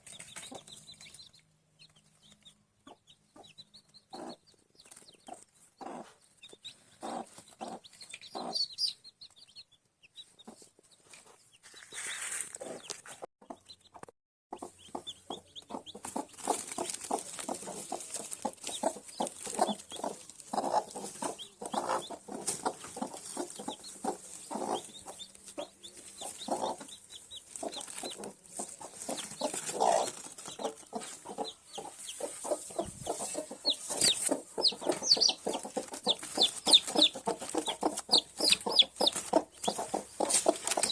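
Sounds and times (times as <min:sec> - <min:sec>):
hens clucking: 0:00.0 - 0:09.0, 0:10.4 - 0:40.9
chicks peeping: 0:00.0 - 0:40.9.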